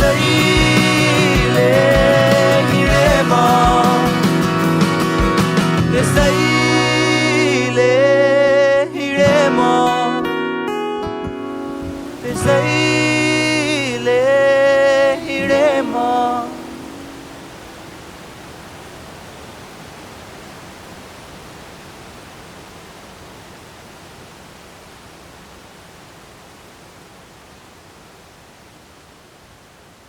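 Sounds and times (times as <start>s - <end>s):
song with singing: 0.0s - 10.6s, 11.8s - 17.6s
steady rushing noise: 11.8s - 30.0s.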